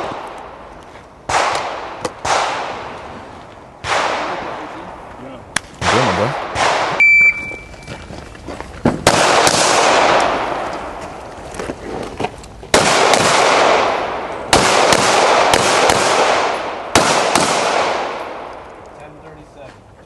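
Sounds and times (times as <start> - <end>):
pistol shots echoing: 1.3 - 3.0, 3.8 - 4.7, 5.8 - 7.2, 9.0 - 10.7, 12.7 - 18.8.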